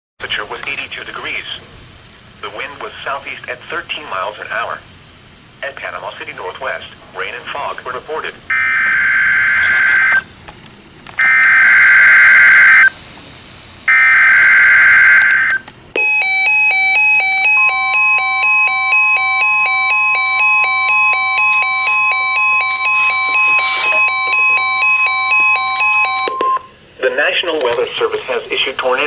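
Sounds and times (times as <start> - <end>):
steady warning alarm tone: 5.6 - 10.4, 11.2 - 29.0
digital data header screech: 8.5 - 10.2, 11.2 - 12.9, 13.9 - 15.6, 18.8 - 26.4
two-pitch alarm beeps: 8.5 - 10.2, 11.2 - 12.9, 13.9 - 26.8.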